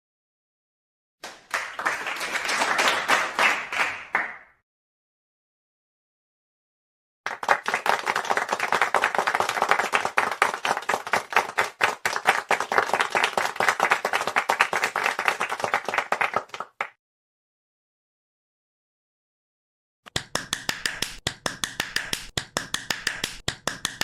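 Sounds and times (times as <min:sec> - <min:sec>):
applause: 0:01.2 - 0:04.6, 0:07.3 - 0:17.0.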